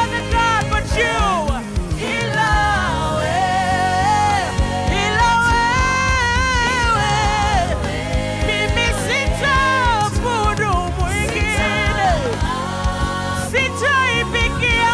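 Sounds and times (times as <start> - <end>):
live band accompaniment: 0.0 - 14.9.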